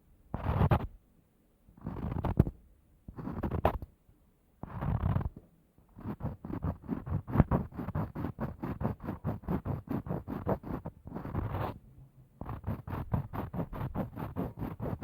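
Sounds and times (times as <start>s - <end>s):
small scratchy taps: 1.8s - 2.5s, 3.1s - 3.9s.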